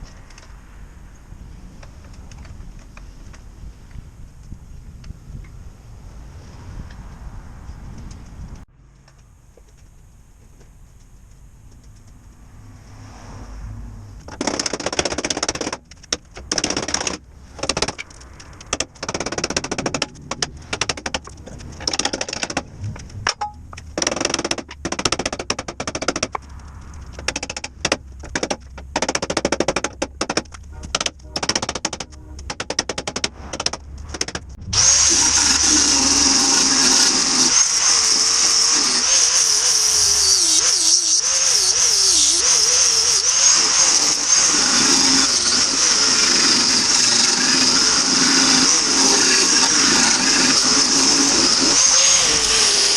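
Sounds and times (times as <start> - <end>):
hand-held power tool running: 34.7 - 52.9.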